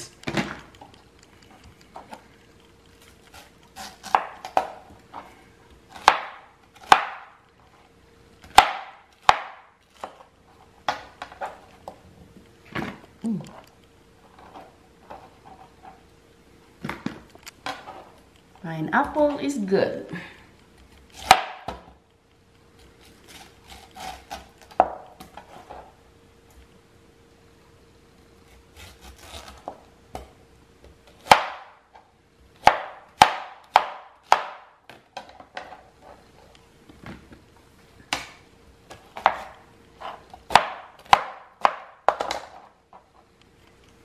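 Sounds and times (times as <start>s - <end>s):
knife chopping on cutting board: 3.3s - 4.8s, 5.9s - 7.3s, 8.4s - 10.2s, 21.2s - 21.9s, 23.3s - 25.4s, 31.2s - 31.8s, 32.6s - 34.7s, 38.9s - 42.4s.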